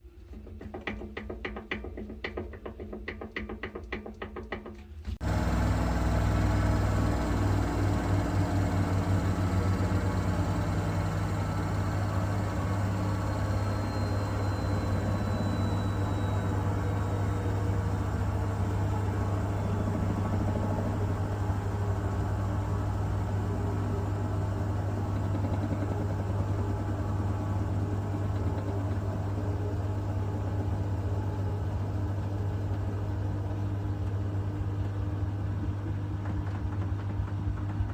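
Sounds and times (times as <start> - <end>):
washing machine spin hum and rattle: 0.0 - 37.9
washing machine drum clicking and knocking: 0.4 - 5.0.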